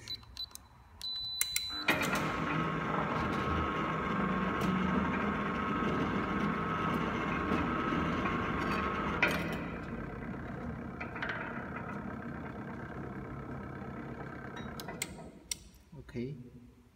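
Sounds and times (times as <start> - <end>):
keypad beep: 0.0 - 2.0
gate motor humming: 1.7 - 15.7.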